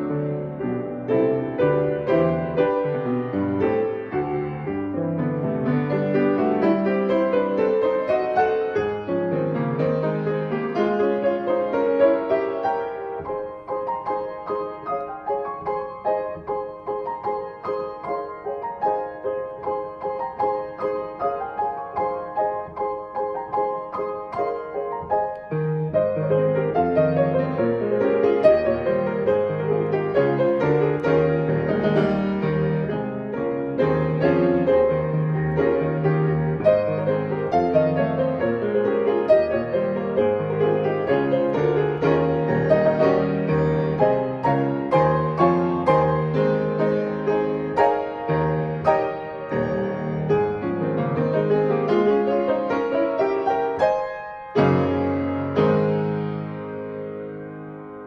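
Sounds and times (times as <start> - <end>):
low bass piano notes: 0.0 - 58.0
piano playing gentle piece: 0.0 - 58.0.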